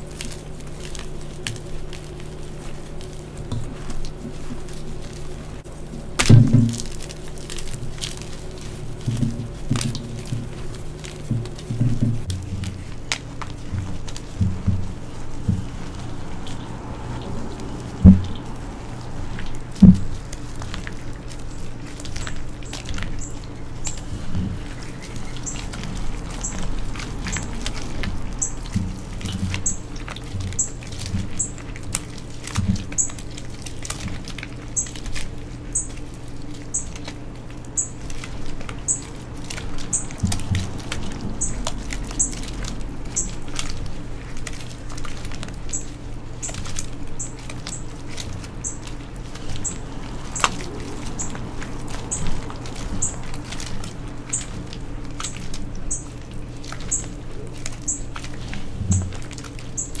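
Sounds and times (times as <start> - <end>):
chalk crunching: 0.0 - 59.8
faint steady hum: 0.0 - 60.0
soft low thumps: 8.5 - 22.6.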